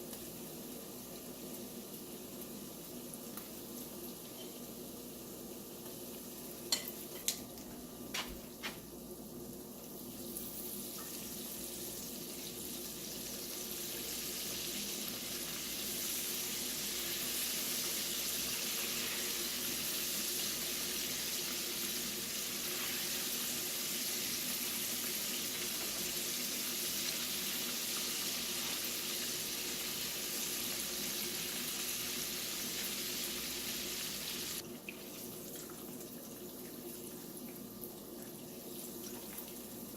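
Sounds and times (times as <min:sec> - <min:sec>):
food sizzling in hot oil: 0:08.1 - 0:34.6.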